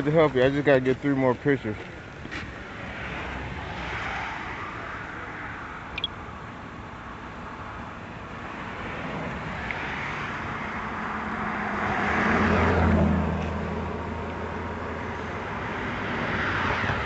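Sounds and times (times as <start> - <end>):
road traffic passing: 0.0 - 17.0
vehicle passing close by: 8.8 - 17.0.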